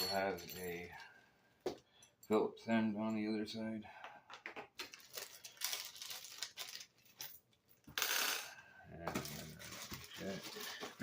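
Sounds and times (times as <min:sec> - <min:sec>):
metal keys and screws clinking: 0:00.0 - 0:01.1.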